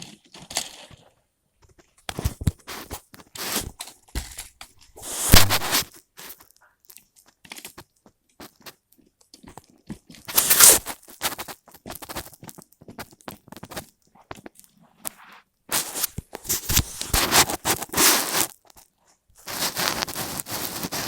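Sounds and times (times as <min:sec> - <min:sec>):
plastic parts crunching rattle: 0:10.1 - 0:14.5, 0:15.7 - 0:18.8
plastic parts clicking and scraping: 0:10.1 - 0:21.0.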